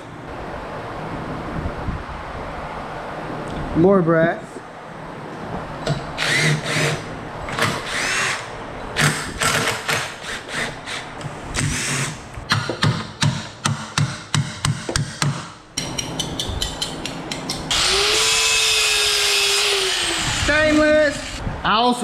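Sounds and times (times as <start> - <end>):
power drill bursts: 6.2 - 12.2, 17.7 - 21.4.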